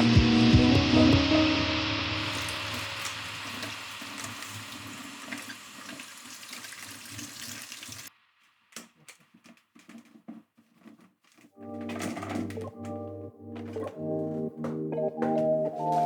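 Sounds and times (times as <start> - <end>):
tap running into sink: 2.2 - 8.1
faint clicks and knocks: 8.7 - 16.0.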